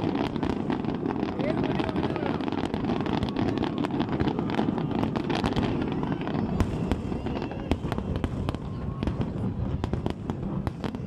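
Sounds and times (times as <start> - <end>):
fireworks popping and banging: 0.0 - 11.0
sharp loud firework cracks: 0.0 - 11.0.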